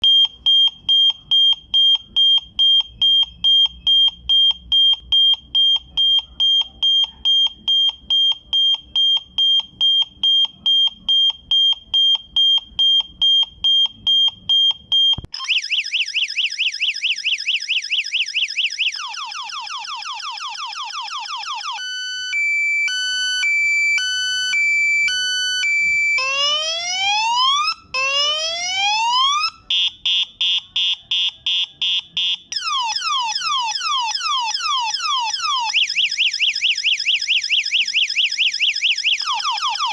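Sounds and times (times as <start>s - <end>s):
reverse alarm beeping: 0.0s - 19.6s, 29.7s - 39.9s
electronic siren tones: 14.0s - 39.9s.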